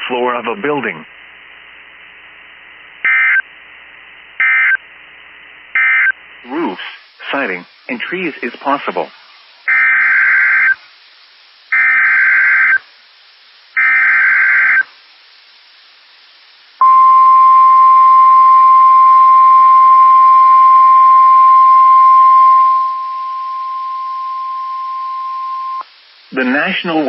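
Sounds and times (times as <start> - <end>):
radio hiss: 0.0 - 27.0
screeching digital data bursts: 9.7 - 10.8, 11.7 - 12.8, 13.8 - 14.8, 18.8 - 25.9
radio warning alarm tone: 16.8 - 25.8.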